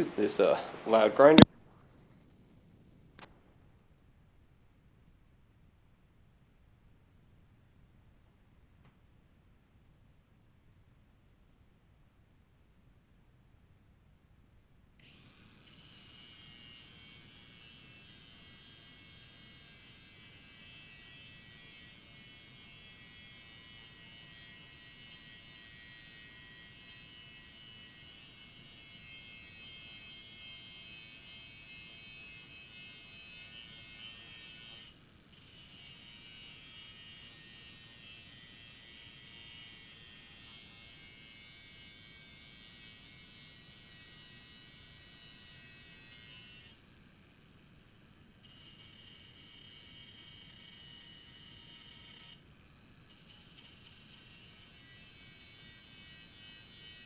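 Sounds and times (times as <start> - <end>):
electric grinder sharpening blade: 0.0 - 3.3, 15.0 - 46.9, 48.4 - 52.4, 53.0 - 57.0.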